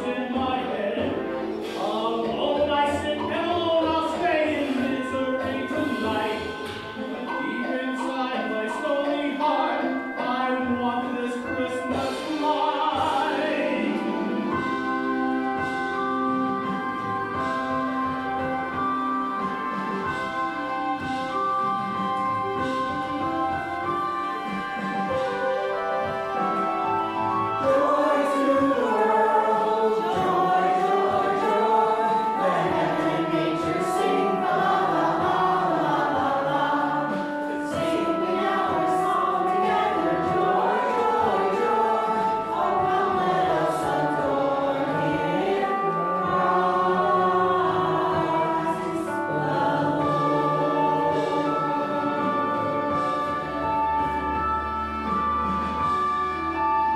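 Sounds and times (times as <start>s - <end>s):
choir singing: 0.0s - 21.4s, 22.6s - 55.9s.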